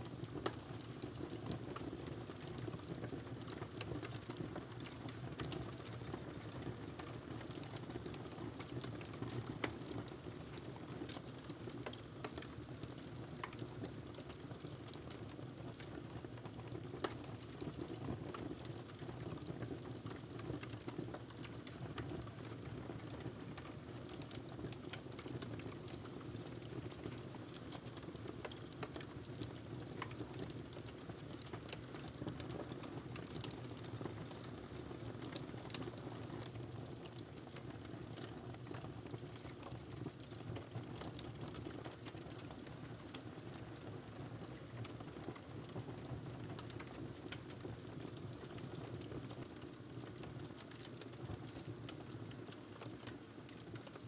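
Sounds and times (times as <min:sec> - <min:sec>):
wood fire crackling: 0:23.0 - 0:43.9, 0:44.5 - 0:54.0.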